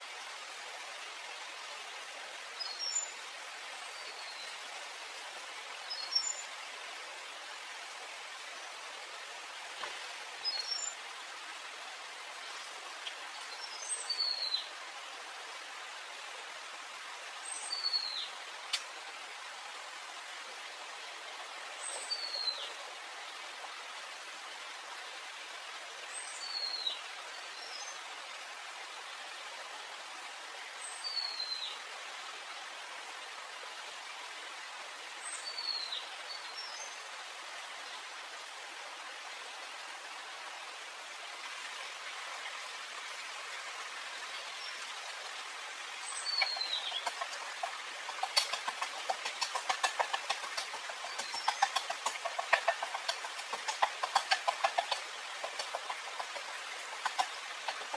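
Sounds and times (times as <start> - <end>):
rain falling: 37.2 - 57.9.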